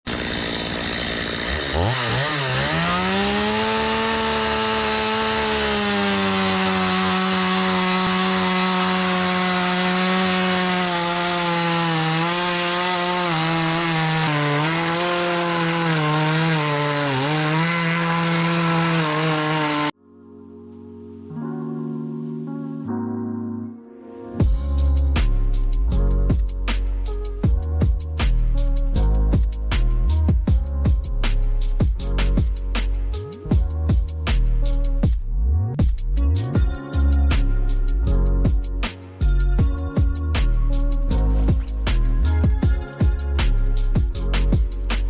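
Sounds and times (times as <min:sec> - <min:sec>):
chainsaw cutting through log: 0:00.0 - 0:20.0, 0:38.4 - 0:45.0
soft keyboard music: 0:19.9 - 0:45.0.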